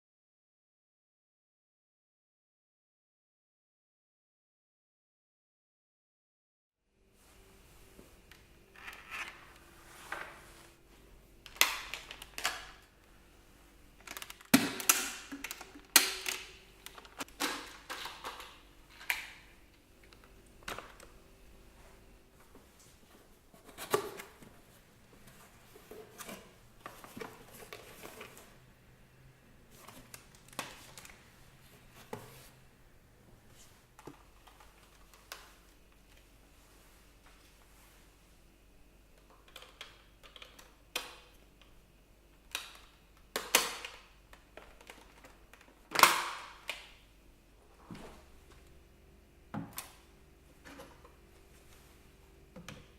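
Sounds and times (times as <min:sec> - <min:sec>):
vacuum parts clicking and clattering: 0:14.0 - 0:19.3.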